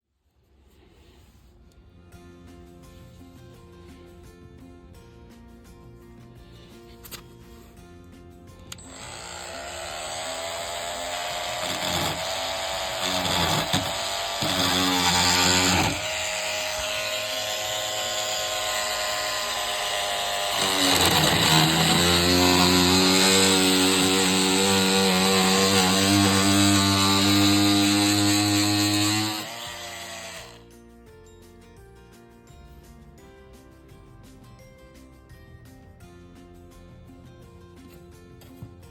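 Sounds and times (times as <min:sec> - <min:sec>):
oscillating multi-tool cutting wood: 0:08.7 - 0:30.6.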